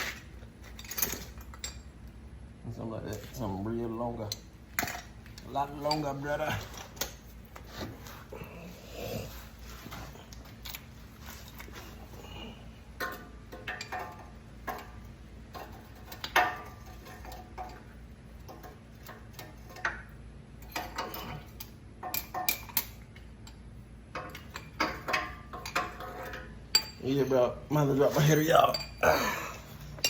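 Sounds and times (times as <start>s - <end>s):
hand tools clinking on metal: 24.2s - 30.0s.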